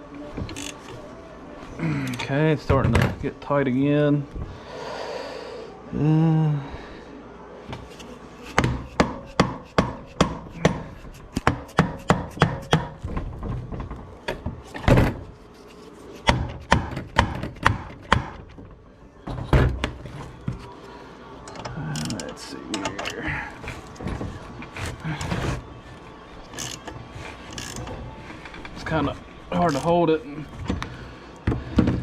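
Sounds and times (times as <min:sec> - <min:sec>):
hammer knocking on metal: 0:08.6 - 0:13.0.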